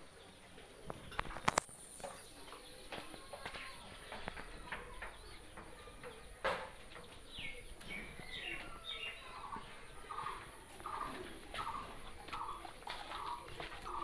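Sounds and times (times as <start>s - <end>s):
birds calling: 0.0s - 14.0s.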